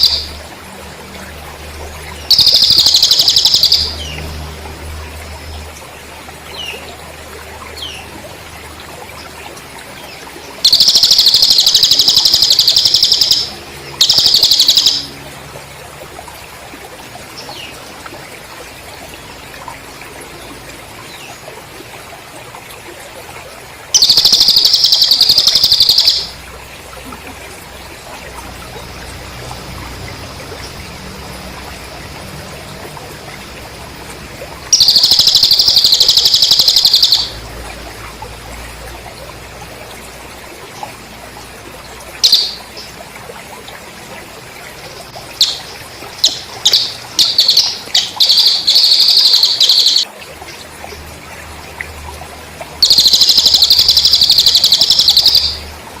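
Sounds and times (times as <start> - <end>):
bird trilling: 0.0 - 0.3, 2.3 - 4.1, 10.6 - 15.1, 24.0 - 26.4, 34.7 - 37.4, 42.2 - 42.7, 45.3 - 50.1, 52.8 - 55.6
sharp chirps: 0.0 - 0.4, 2.3 - 4.2, 10.6 - 15.2, 24.0 - 26.4, 34.7 - 37.4, 42.2 - 42.7, 45.2 - 50.1, 52.8 - 55.7
crickets trilling: 2.0 - 5.0, 10.6 - 15.3, 23.9 - 38.8, 45.0 - 50.1, 52.7 - 55.7.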